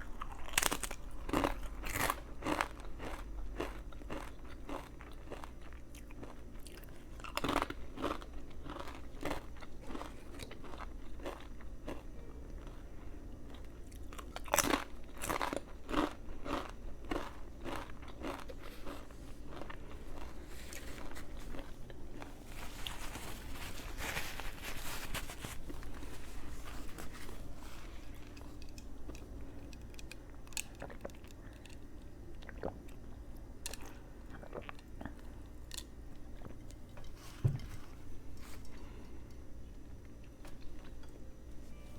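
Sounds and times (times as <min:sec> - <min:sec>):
crunchy sandwich chewing: 0:00.0 - 0:12.7, 0:13.5 - 0:32.9.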